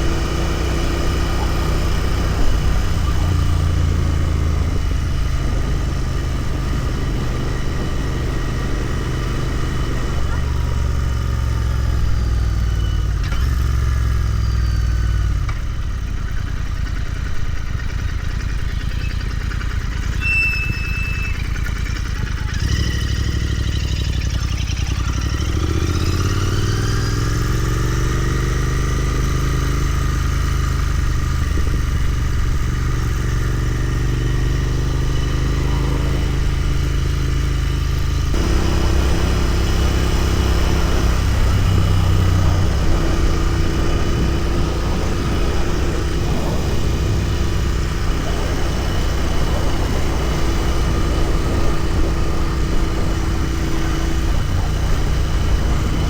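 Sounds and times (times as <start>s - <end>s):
motorcycle engine running: 0.0s - 56.0s
wind noise on microphone: 35.1s - 56.0s.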